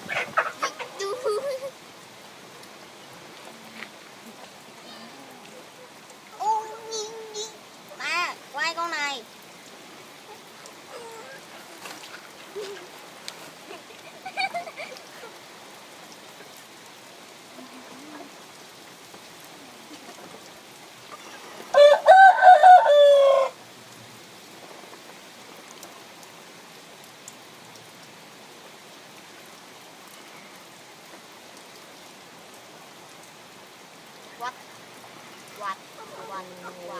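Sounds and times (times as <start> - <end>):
steady background hiss: 0.0 - 36.9
faint chicken calls: 21.1 - 23.6
rooster crowing: 21.7 - 23.6.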